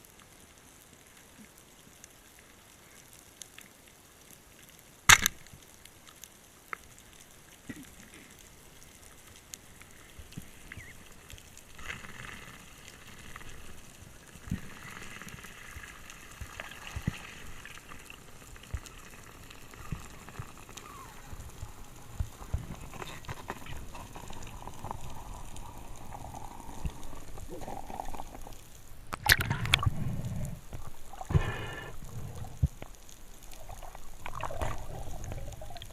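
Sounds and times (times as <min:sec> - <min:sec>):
underwater clicks and pops: 0:05.1 - 0:05.5, 0:28.0 - 0:31.6.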